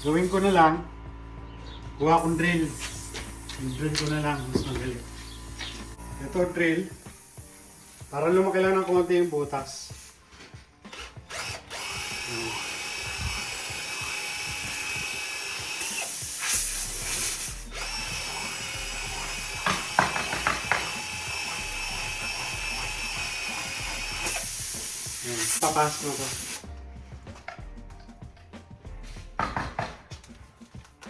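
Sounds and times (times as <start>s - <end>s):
power drill boring into tire: 10.9s - 26.6s.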